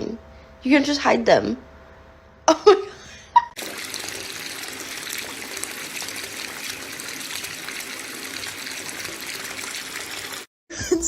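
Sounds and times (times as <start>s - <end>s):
running water gushing: 3.6s - 10.5s.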